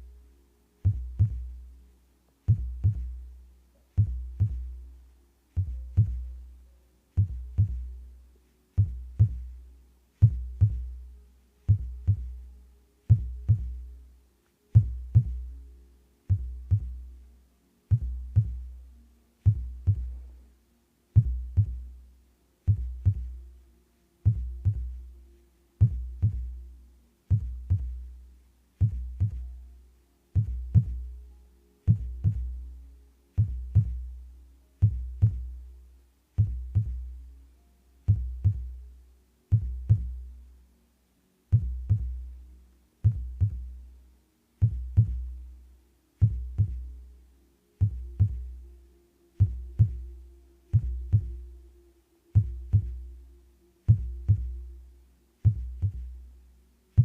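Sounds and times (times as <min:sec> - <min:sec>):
amplified heartbeat: 0:00.8 - 0:01.6, 0:02.5 - 0:03.3, 0:04.0 - 0:04.8, 0:05.6 - 0:06.4, 0:07.1 - 0:08.0, 0:08.8 - 0:09.6, 0:10.2 - 0:12.5, 0:13.1 - 0:14.0, 0:14.8 - 0:15.6, 0:16.3 - 0:17.2, 0:17.9 - 0:18.8, 0:19.4 - 0:20.4, 0:21.2 - 0:22.0, 0:22.7 - 0:23.5, 0:24.2 - 0:25.2, 0:25.8 - 0:26.7, 0:27.3 - 0:28.2, 0:28.8 - 0:29.6, 0:30.4 - 0:31.2, 0:31.9 - 0:32.6, 0:33.3 - 0:34.2, 0:34.8 - 0:35.7, 0:36.4 - 0:37.2, 0:38.1 - 0:38.9, 0:39.5 - 0:40.4, 0:41.5 - 0:42.3, 0:43.0 - 0:43.8, 0:44.6 - 0:45.4, 0:46.2 - 0:47.0, 0:47.8 - 0:48.7, 0:49.3 - 0:51.7, 0:52.3 - 0:53.2, 0:53.9 - 0:54.8, 0:55.4 - 0:56.2.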